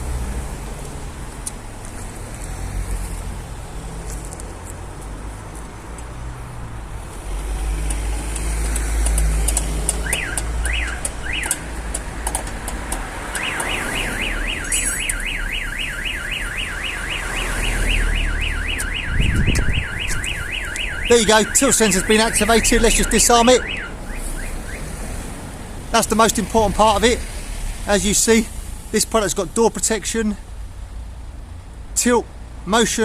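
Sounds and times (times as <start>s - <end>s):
car alarm siren warbling: 9.9s - 11.7s, 13.2s - 25.0s.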